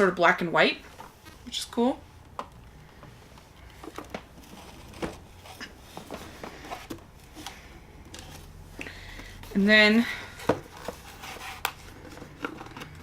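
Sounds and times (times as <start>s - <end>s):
faint low room hum: 0.0s - 13.0s.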